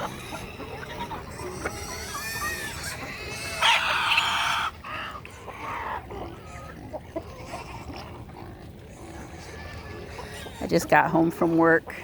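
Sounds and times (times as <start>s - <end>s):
poultry flock calling: 0.0s - 7.6s.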